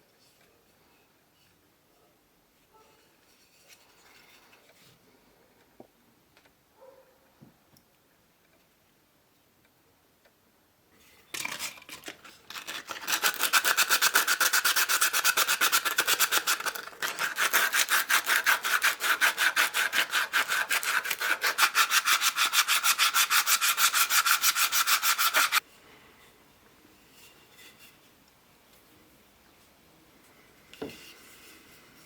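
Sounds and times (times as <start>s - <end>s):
hand tool scraping strokes: 11.4s - 25.7s.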